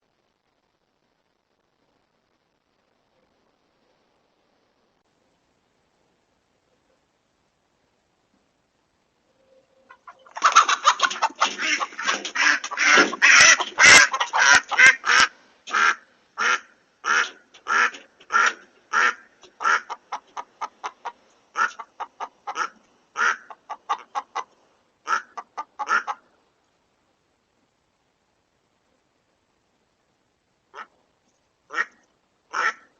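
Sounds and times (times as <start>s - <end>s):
chicken squawking in alarm: 9.9s - 20.7s, 21.6s - 24.5s, 25.1s - 26.2s, 31.7s - 32.9s.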